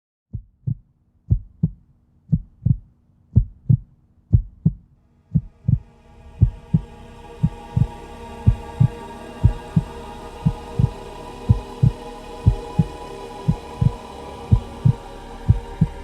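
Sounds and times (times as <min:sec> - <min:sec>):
heartbeat thumps: 0:00.3 - 0:16.0
low hum and hiss: 0:05.0 - 0:16.0.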